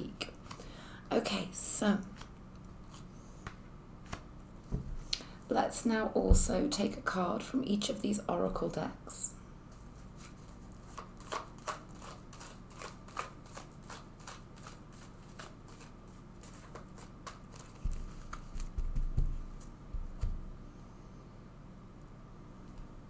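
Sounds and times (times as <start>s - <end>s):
cards shuffling clicks and slides: 10.2s - 20.4s.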